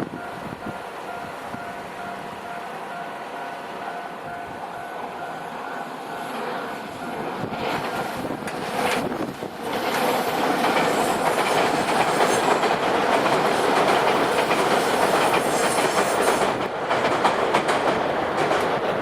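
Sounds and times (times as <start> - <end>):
train wheels clattering over rail joints: 6.3 - 19.0.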